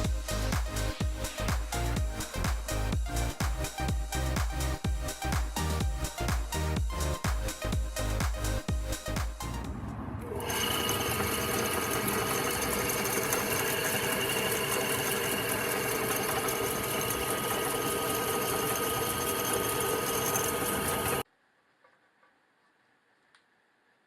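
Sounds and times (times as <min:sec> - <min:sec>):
drill press motor humming with whine: 0:10.3 - 0:21.2.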